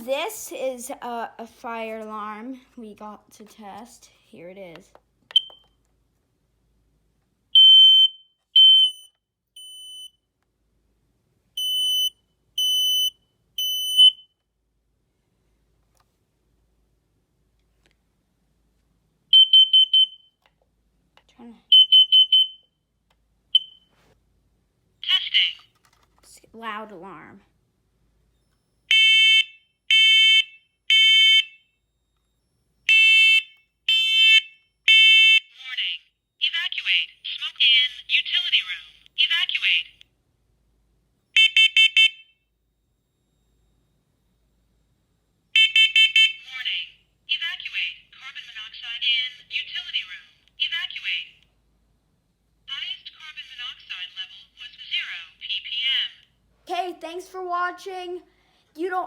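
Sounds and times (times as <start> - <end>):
smoke alarm beeping: 5.3 - 5.8, 7.6 - 10.2, 11.6 - 14.4, 19.3 - 20.4, 21.7 - 22.9, 23.5 - 24.0, 28.4 - 35.5, 41.3 - 44.7, 45.4 - 47.0.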